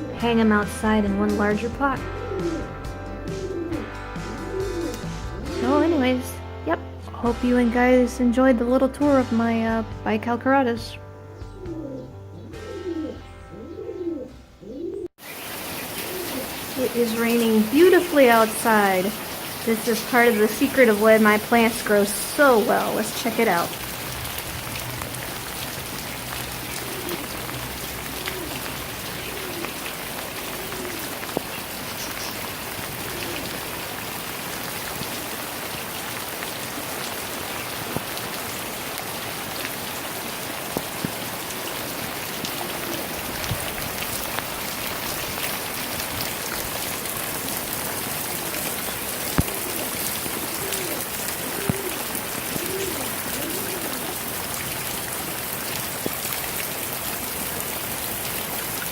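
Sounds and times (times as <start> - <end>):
rain falling: 15.2 - 58.9.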